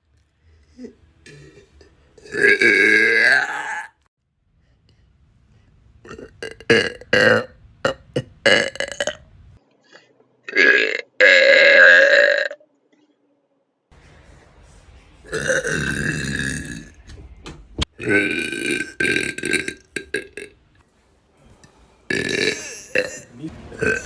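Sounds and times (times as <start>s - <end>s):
person burping: 0.8s - 4.0s, 6.0s - 9.2s, 10.5s - 12.6s, 15.3s - 17.0s, 18.0s - 20.6s, 22.1s - 24.0s.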